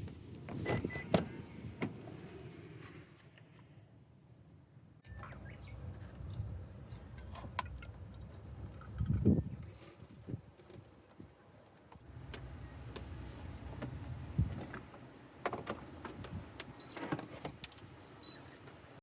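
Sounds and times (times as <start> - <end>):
strong wind buffeting: 5.1 - 10.5, 12.5 - 14.7.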